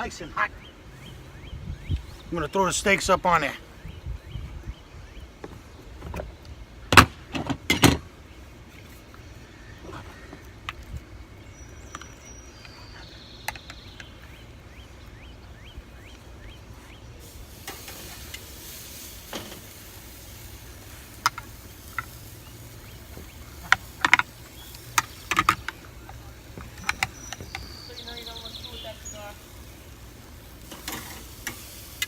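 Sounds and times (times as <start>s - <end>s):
meat sizzling: 17.1s - 32.0s
metal knocking on grill grate: 20.7s - 28.9s.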